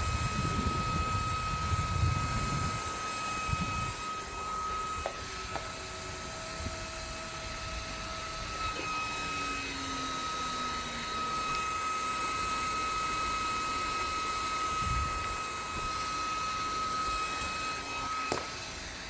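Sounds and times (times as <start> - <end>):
handheld fan motor whine: 0.0 - 19.0.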